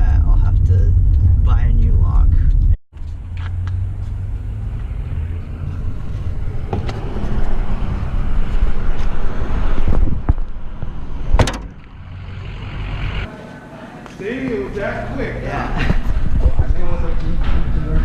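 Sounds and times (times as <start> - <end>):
motor vehicle rumbling: 0.0 - 13.3
sharp clicks or knocks: 11.3 - 12.0.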